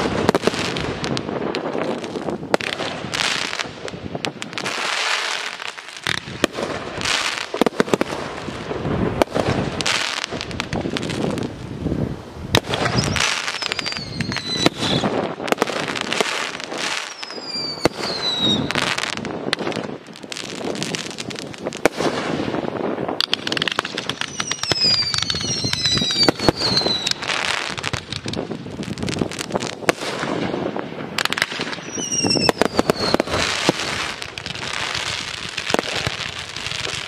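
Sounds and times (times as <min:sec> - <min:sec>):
firework launches and bursts: 0:00.0 - 0:37.0
falling firework whistles: 0:12.5 - 0:19.6, 0:23.2 - 0:30.4, 0:31.2 - 0:37.0.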